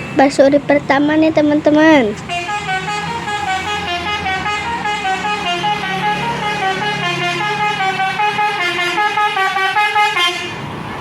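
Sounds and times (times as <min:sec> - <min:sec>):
musical air horn melody: 0:02.2 - 0:10.6.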